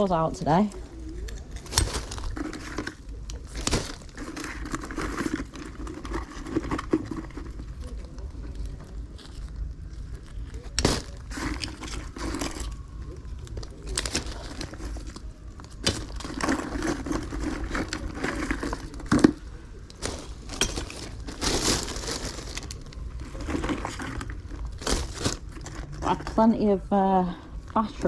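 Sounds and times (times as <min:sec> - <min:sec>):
rustling and crinkling bags: 0:00.0 - 0:28.0.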